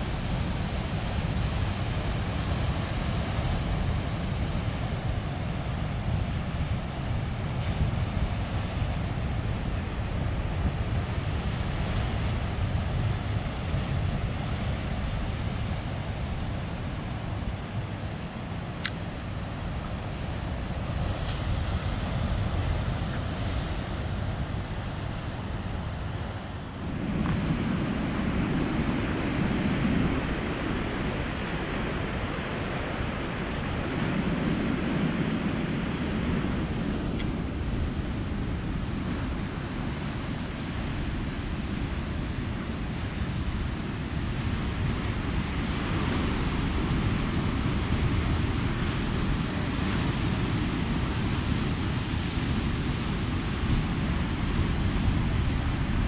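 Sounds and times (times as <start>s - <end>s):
wind on microphone: 0.0s - 56.0s
ocean surf breaking: 18.9s - 56.0s.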